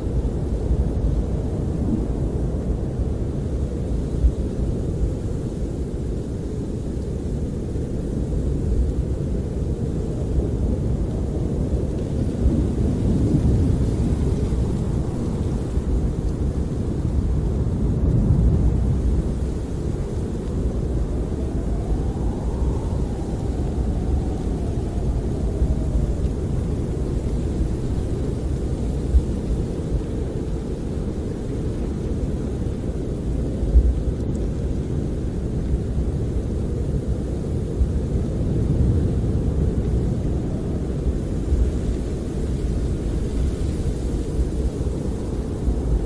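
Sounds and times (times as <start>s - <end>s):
deep rumble of storm wind: 0.0s - 46.0s.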